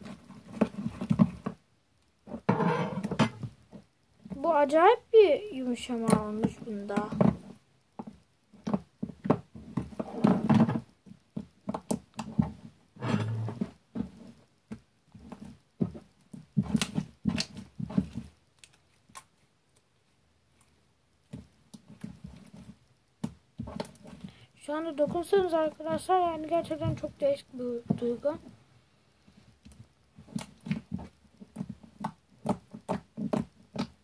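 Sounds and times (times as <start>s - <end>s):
slime squelching: 15.3s - 19.9s, 20.5s - 28.4s, 29.6s - 34.0s.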